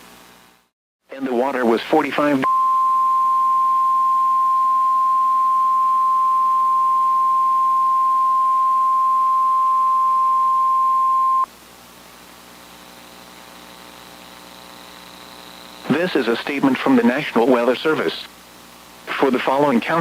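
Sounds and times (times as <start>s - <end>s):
faint radio hiss and hum: 0.0s - 2.5s, 11.5s - 20.0s
alarm tone beep: 2.4s - 11.5s.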